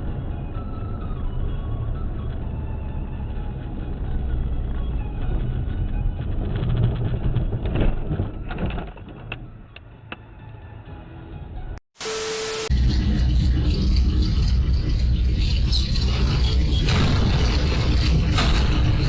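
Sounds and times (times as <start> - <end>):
heavy machine engine rumbling: 12.7 - 19.0.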